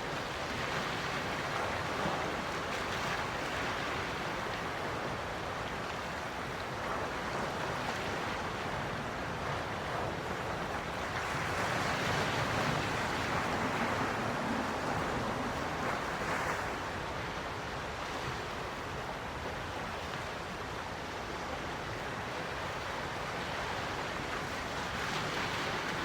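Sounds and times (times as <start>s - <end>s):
ocean waves washing in: 0.0s - 26.0s.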